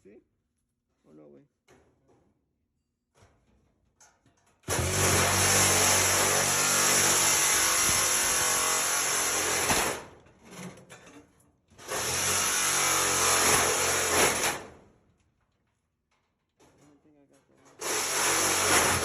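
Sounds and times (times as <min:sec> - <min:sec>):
angle grinder cutting metal: 0:04.7 - 0:10.0, 0:11.8 - 0:14.6, 0:17.8 - 0:19.0.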